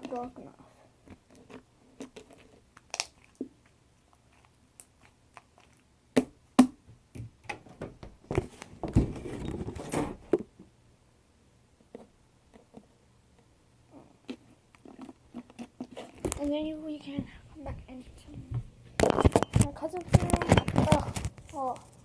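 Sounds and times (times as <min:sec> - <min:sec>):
rubbing and rustling: 0:07.6 - 0:10.3, 0:14.0 - 0:17.2.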